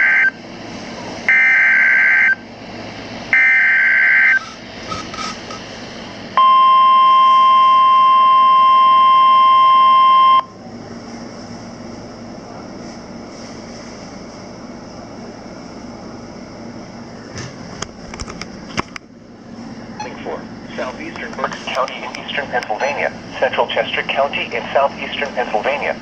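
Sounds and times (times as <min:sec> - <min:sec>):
steady warning alarm tone: 0:00.0 - 0:00.5, 0:01.3 - 0:02.5, 0:03.3 - 0:05.5, 0:06.4 - 0:10.6, 0:22.4 - 0:23.7.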